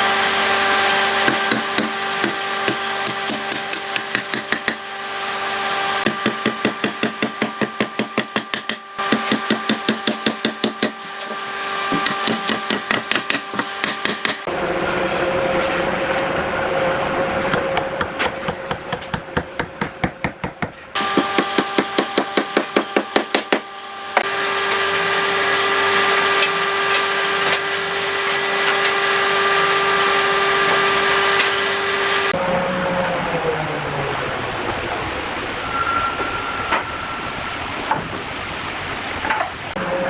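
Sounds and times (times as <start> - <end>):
power tool humming: 0.0 - 16.4.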